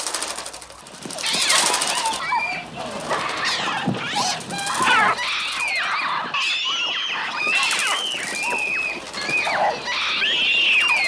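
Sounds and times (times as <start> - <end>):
synthesized gull screeches: 3.2 - 11.0.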